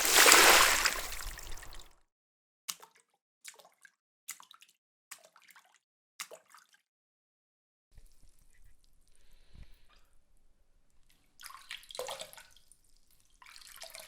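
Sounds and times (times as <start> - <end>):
faint steady water noise: 0.0 - 1.9, 8.0 - 14.0
small water splashes: 0.0 - 1.9.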